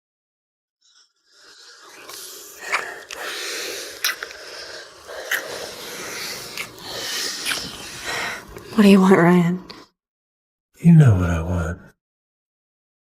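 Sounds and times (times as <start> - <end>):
person breathing heavily: 1.3 - 8.8.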